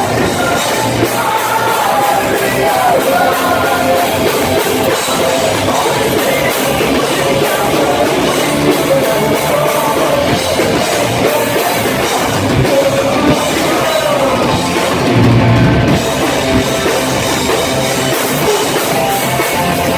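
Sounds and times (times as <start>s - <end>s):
live punk rock band: 0.0s - 19.9s.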